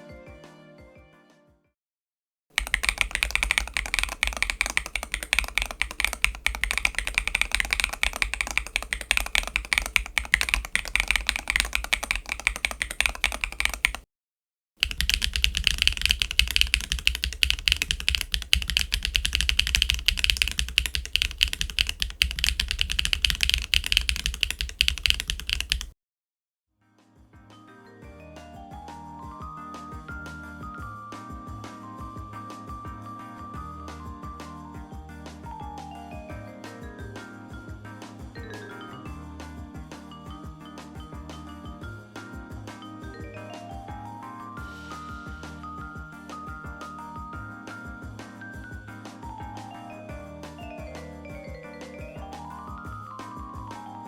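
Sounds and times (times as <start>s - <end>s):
mechanical keyboard typing: 2.6s - 14.0s, 14.8s - 26.0s.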